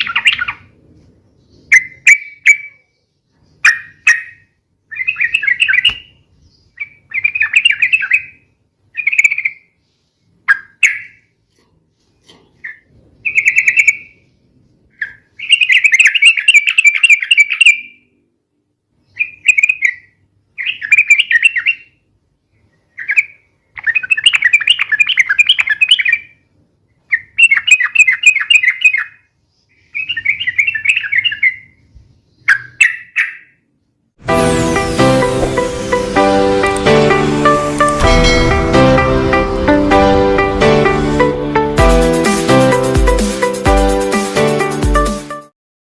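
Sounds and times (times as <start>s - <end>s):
bird chattering song: 0.0s - 0.7s, 1.4s - 9.8s, 10.5s - 11.3s, 12.5s - 18.1s, 19.1s - 22.0s, 22.6s - 26.4s, 27.0s - 33.6s
music: 34.2s - 45.5s.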